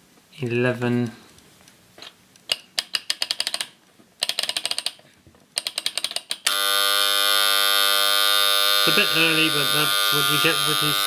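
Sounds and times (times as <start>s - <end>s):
alarm clock buzzer: 6.5s - 11.0s.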